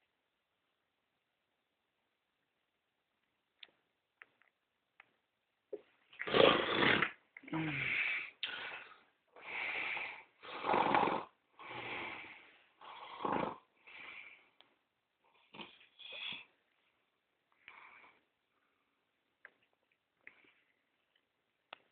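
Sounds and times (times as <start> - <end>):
faint breaths: 7.5 - 16.6, 17.5 - 19.2
man snoring heavily: 9.4 - 13.7.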